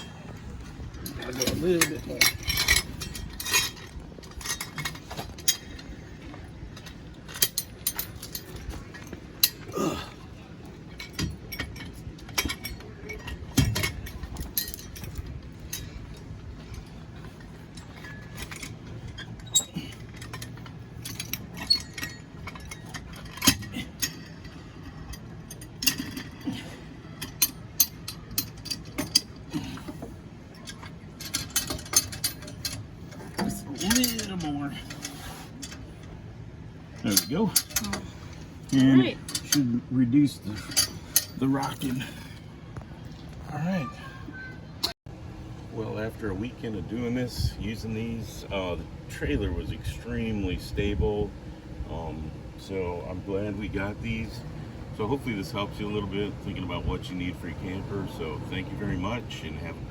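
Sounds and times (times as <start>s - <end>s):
metallic clinks and rattles: 0.9s - 36.2s, 36.8s - 44.1s.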